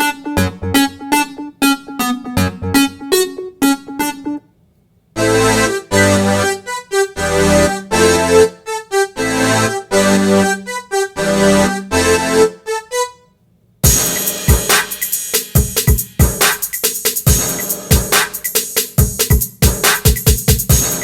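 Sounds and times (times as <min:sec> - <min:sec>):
keyboard chord stabs: 0:00.0 - 0:04.5, 0:05.2 - 0:13.2
drum pattern: 0:13.8 - 0:21.0.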